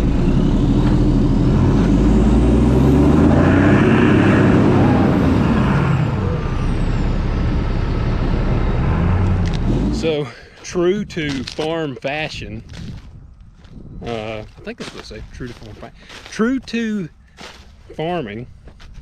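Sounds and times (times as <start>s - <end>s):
diesel truck engine revving: 0.0s - 11.8s.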